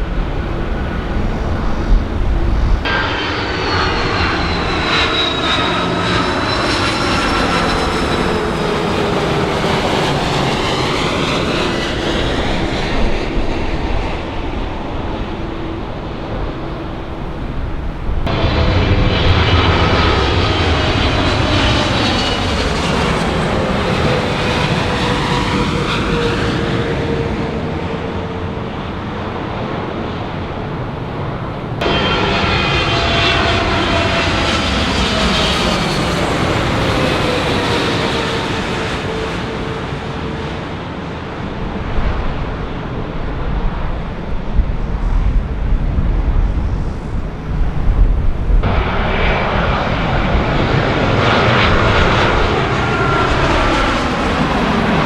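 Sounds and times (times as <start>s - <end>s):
deep uneven rumble: 0.0s - 3.0s
jet airliner passing: 0.0s - 55.0s.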